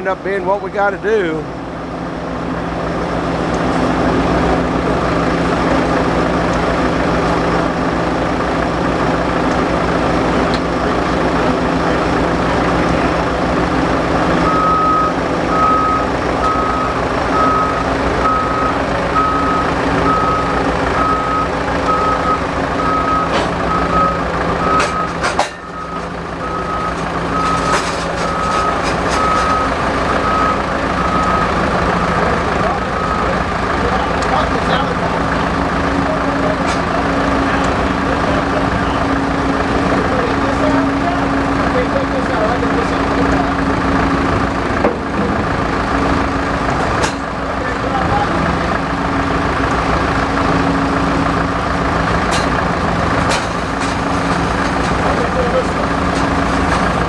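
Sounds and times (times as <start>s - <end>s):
heavy machine engine running: 0.0s - 57.0s
reversing alarm beeping: 4.9s - 5.6s, 14.4s - 34.2s.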